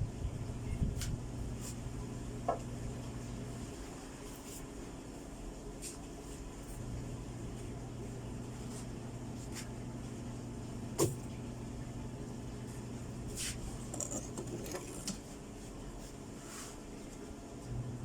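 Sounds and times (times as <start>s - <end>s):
steady low hum: 5.1s - 18.0s.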